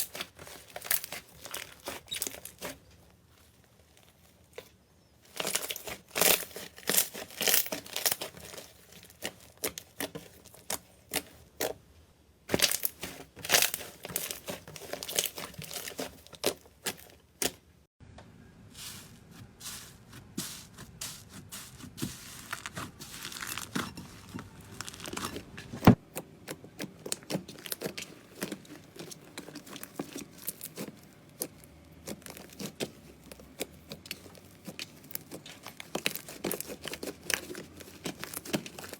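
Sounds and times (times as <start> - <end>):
slime crackling and popping: 0.0 - 2.8, 5.3 - 11.7, 12.5 - 17.6, 22.4 - 25.5, 26.5 - 38.9.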